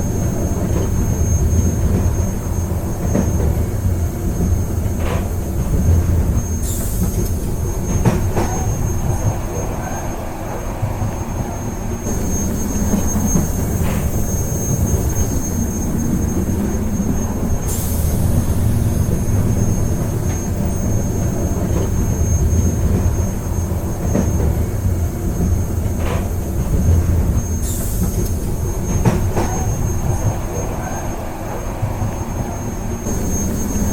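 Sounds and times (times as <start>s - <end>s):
train rumbling on track: 0.0s - 33.9s.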